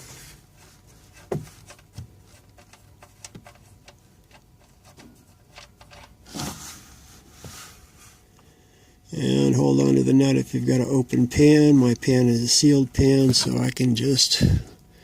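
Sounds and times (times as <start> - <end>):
scrape or rustle: 0.0 - 3.8, 6.2 - 8.3.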